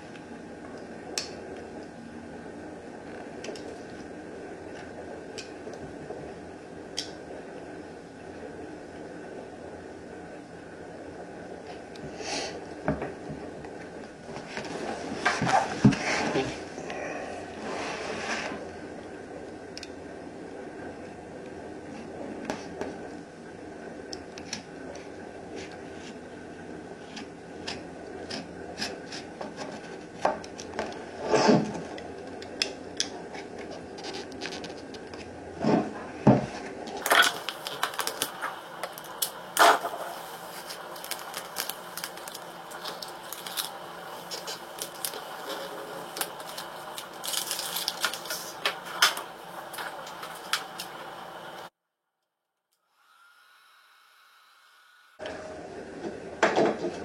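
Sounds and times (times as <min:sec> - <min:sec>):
steady low hiss: 0:37.0 - 0:51.7.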